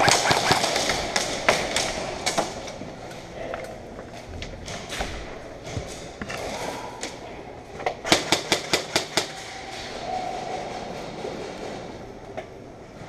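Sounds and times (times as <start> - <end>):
airsoft gunshots: 0.0 - 2.1.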